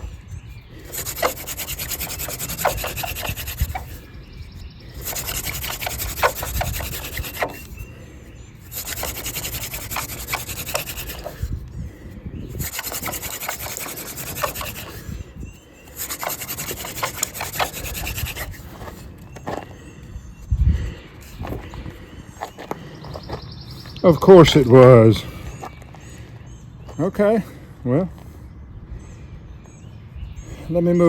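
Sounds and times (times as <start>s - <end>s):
spindle rubbing on fire board: 0.0s - 19.6s.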